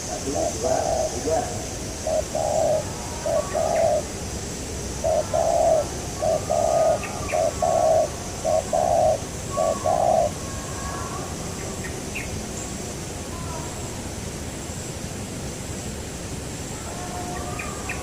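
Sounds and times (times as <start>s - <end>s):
dove cooing: 0.0s - 4.2s, 4.9s - 11.2s.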